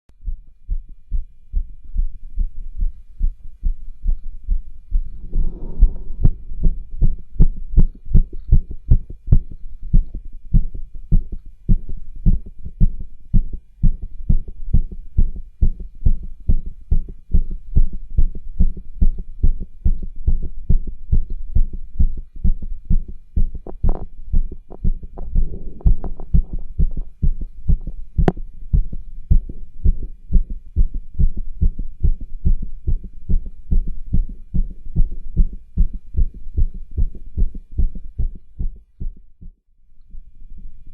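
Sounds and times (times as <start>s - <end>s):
heartbeat through stethoscope: 0.1s - 40.8s
rustling noise: 4.9s - 8.5s.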